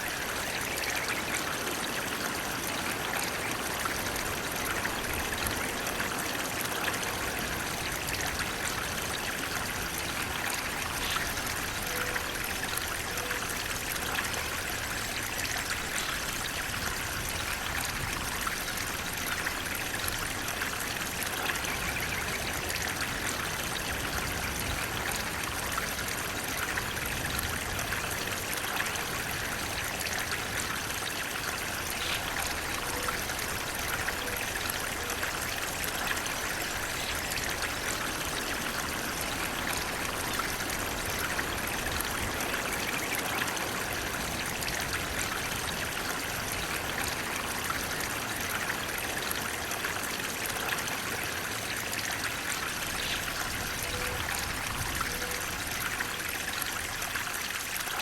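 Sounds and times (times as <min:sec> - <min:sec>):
water rushing: 0:00.0 - 0:58.0.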